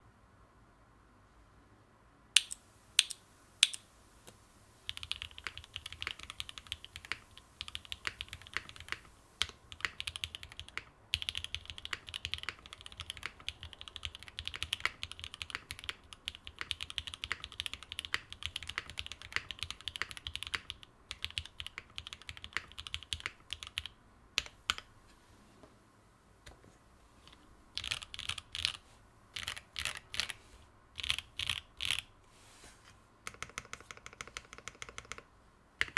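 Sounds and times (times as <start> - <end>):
mechanical keyboard typing: 2.4 - 3.8, 4.9 - 24.9, 27.8 - 28.8, 29.4 - 30.4, 31.0 - 32.1, 33.2 - 35.9.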